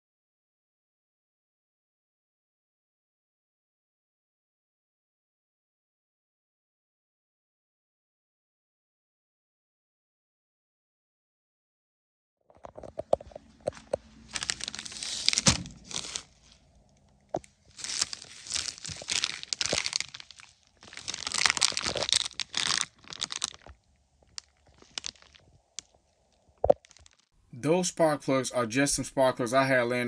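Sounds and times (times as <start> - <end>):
crinkling crackling noise: 12.5 - 30.0.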